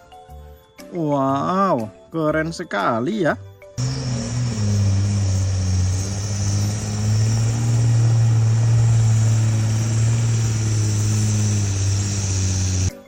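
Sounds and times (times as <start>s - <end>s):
vehicle engine idling: 3.8s - 12.9s.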